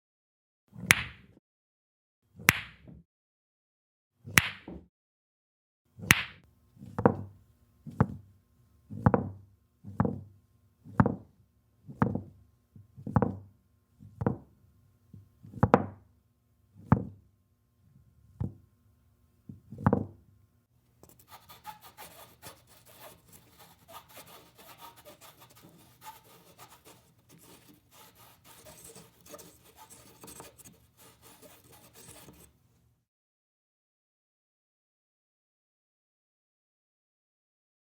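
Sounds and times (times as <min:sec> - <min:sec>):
scraping on pool table: 0:21.0 - 0:32.6.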